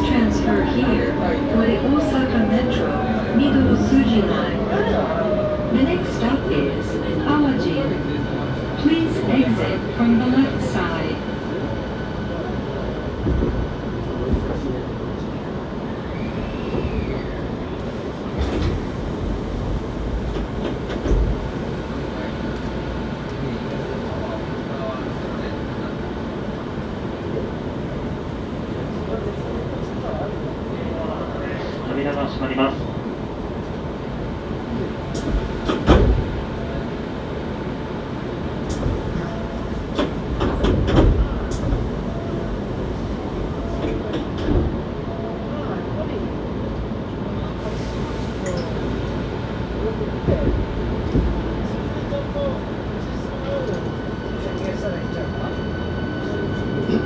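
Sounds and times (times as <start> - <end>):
train wheels rumbling: 0.0 - 45.1.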